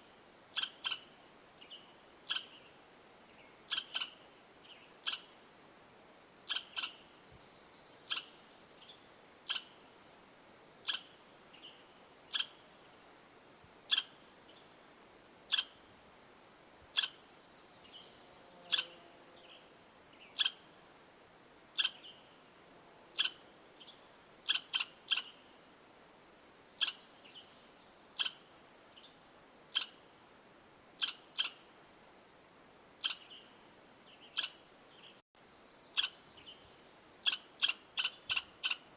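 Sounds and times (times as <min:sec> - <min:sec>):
small animal chip call: 0:00.5 - 0:01.0, 0:02.3 - 0:02.6, 0:03.7 - 0:04.2, 0:05.0 - 0:05.3, 0:06.5 - 0:07.0, 0:08.1 - 0:08.3, 0:10.8 - 0:11.1, 0:12.3 - 0:12.6, 0:13.9 - 0:14.2, 0:15.5 - 0:15.8, 0:18.7 - 0:19.0, 0:20.4 - 0:20.6, 0:21.8 - 0:22.0, 0:28.2 - 0:28.4, 0:31.0 - 0:31.6, 0:33.0 - 0:33.2, 0:37.2 - 0:38.9.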